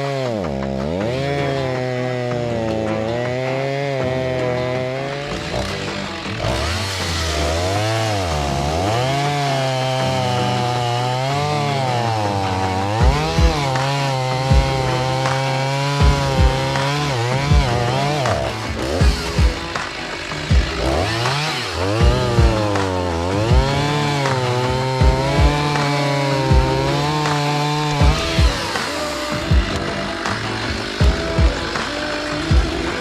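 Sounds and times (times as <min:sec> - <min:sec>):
background music: 0:00.0 - 0:33.0
chainsaw cutting wood: 0:00.0 - 0:33.0
low thumps: 0:14.4 - 0:15.2, 0:15.8 - 0:31.8.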